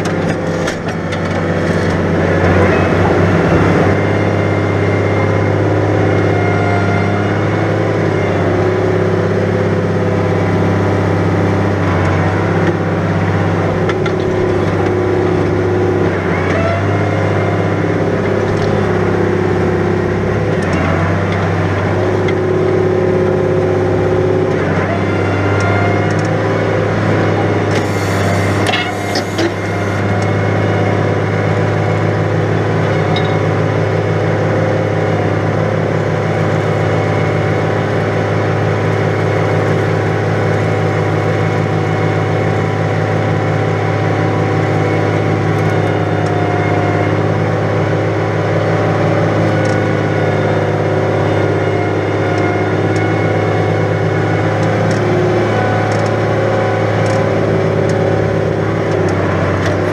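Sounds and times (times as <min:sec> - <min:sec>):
tractor diesel engine under load: 0:00.0 - 0:59.9.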